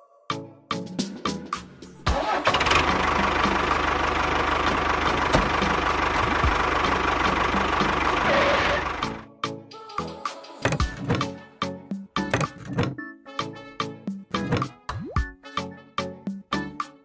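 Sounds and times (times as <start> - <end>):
engine running with rapid pulse: 2.0 - 9.2.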